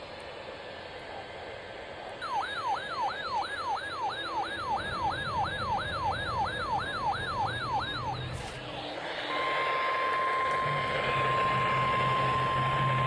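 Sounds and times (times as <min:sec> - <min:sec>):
electronic yelp siren alarm: 0:02.2 - 0:08.6, 0:09.2 - 0:13.0.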